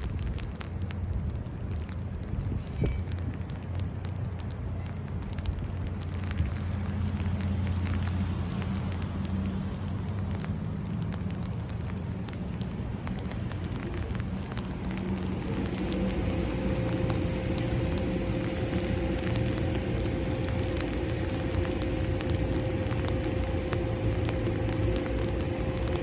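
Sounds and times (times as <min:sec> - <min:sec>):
wind on microphone: 0:00.0 - 0:03.7
low hum: 0:00.0 - 0:26.0
steady mid-pitched tone: 0:15.0 - 0:26.0.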